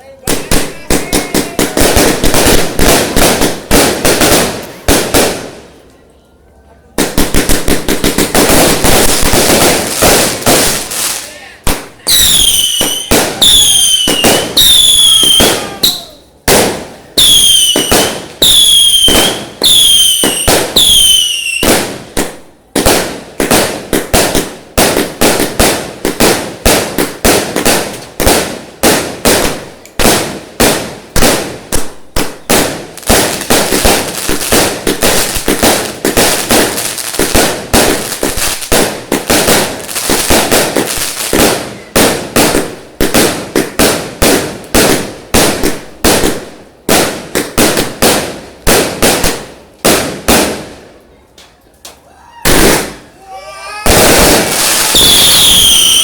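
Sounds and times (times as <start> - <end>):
firework crackle: 0.0 - 6.0, 7.0 - 51.0, 52.3 - 56.0
whistling firework bangs: 11.7 - 22.0, 52.4 - 53.2, 53.8 - 56.0.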